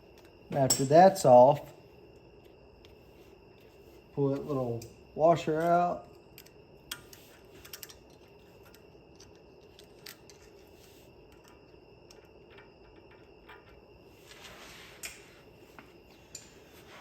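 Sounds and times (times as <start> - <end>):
small metal parts clicking: 6.3 - 10.6.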